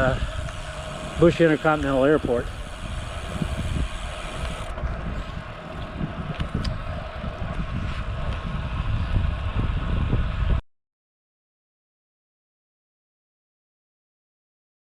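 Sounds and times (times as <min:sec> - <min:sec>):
steady drone: 0:00.0 - 0:09.0
wind buffeting microphone: 0:00.0 - 0:10.6.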